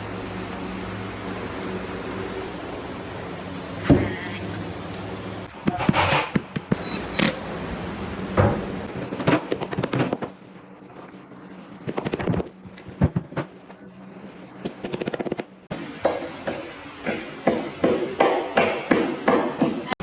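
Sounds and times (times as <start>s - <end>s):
cabinet parts knocking and clattering: 8.4s - 10.3s.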